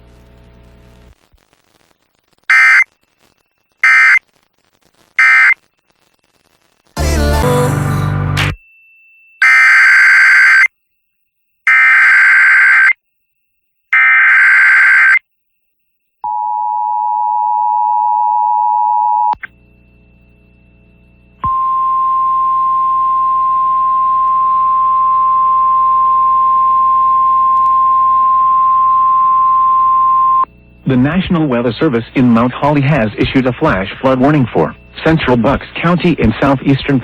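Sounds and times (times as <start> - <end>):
screeching data bursts: 2.5 - 4.2, 5.1 - 6.7, 11.7 - 13.0, 13.9 - 15.2
steady warning tone: 8.6 - 13.4, 14.0 - 15.2.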